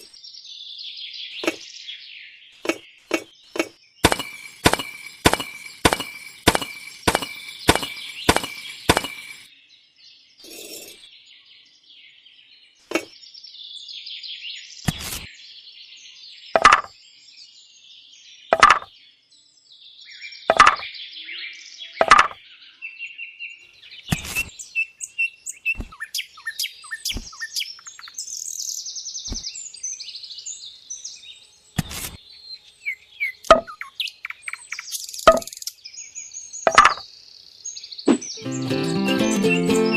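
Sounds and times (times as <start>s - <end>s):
birds chirping: 1.2s - 9.5s, 23.7s - 39.9s
sharp knocks: 2.6s - 9.4s.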